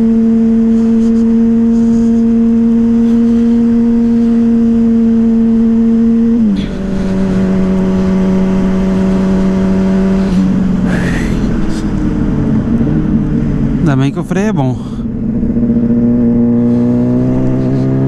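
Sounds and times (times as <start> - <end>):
motorcycle engine running: 0.0 - 18.0.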